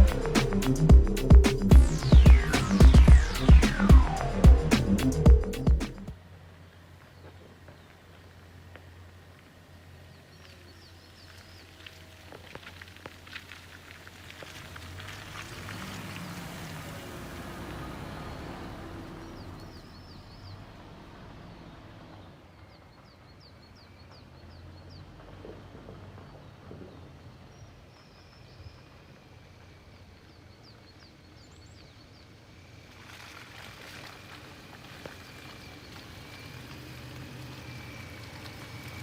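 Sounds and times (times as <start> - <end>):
rush of noise: 0.0 - 6.2
vehicle engine hum: 0.0 - 39.0.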